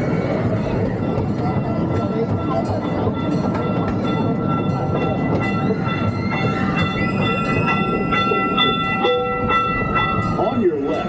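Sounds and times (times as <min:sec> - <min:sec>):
small train rumbling on track: 0:00.0 - 0:11.0.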